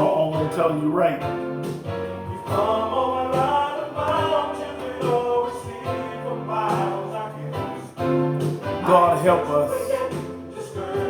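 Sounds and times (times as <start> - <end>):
voices singing long notes: 2.3 - 11.0.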